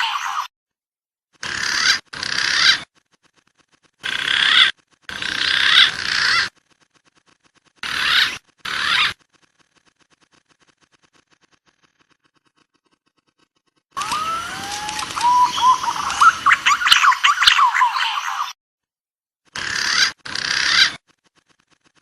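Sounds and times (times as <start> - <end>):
pigeon calls: 1.4 - 6.6, 7.8 - 9.3, 13.9 - 18.6, 19.6 - 21.6.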